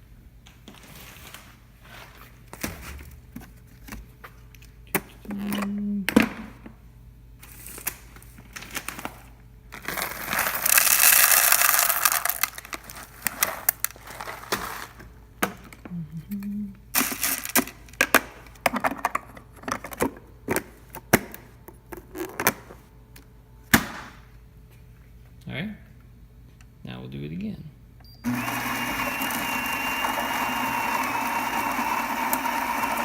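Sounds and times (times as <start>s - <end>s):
coffee beans pouring: 9.8s - 15.0s, 17.0s - 17.6s.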